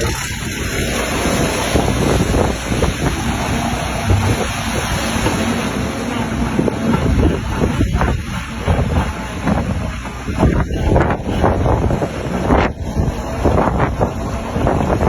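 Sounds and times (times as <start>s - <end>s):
excavator diesel engine rumbling: 0.0s - 15.0s
wind buffeting microphone: 0.0s - 15.0s.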